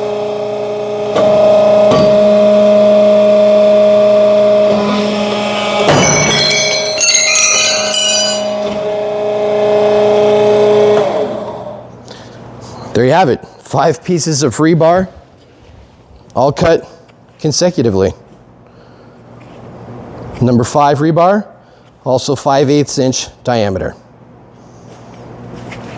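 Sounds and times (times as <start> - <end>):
hydraulic pump humming: 0.0 - 12.0
high metallic ringing: 5.4 - 9.5.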